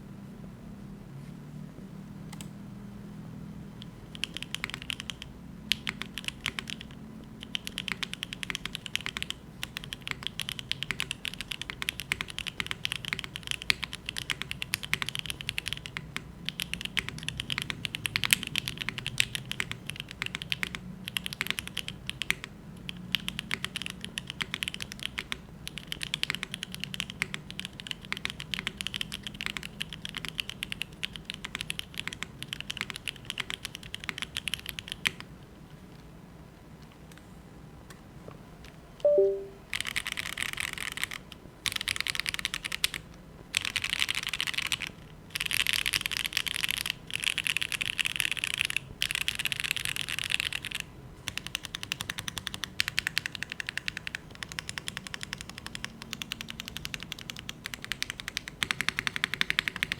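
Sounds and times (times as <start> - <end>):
mechanical keyboard typing: 3.8 - 35.3, 39.0 - 59.9
faint low hum: 26.1 - 39.8.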